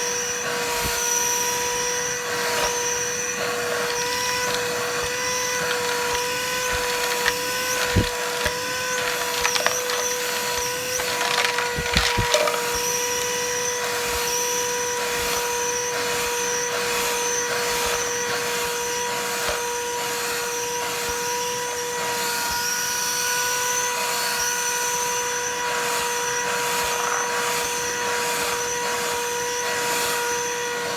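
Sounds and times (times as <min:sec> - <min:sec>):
handheld vacuum motor whine: 0:00.0 - 0:30.9
debris clattering knocks: 0:03.8 - 0:14.1.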